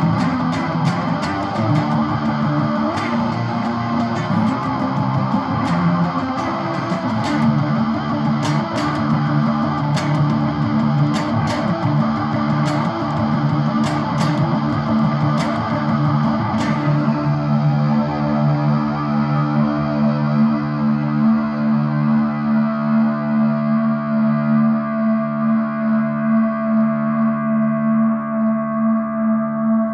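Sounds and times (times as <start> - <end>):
sharp ticks keeping time: 0.0 - 17.2
guitar through effects: 0.0 - 29.9.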